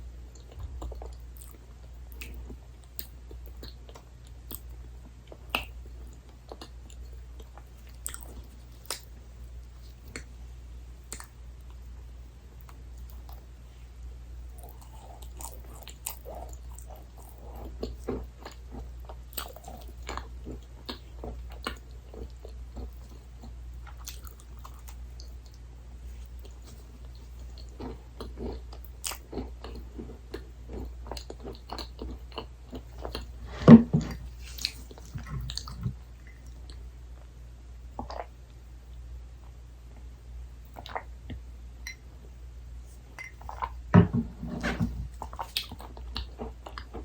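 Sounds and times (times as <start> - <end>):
steady low hum: 0.0 - 47.0
close chewing and biting: 5.3 - 9.1, 14.6 - 25.6, 26.2 - 36.8, 44.5 - 47.0.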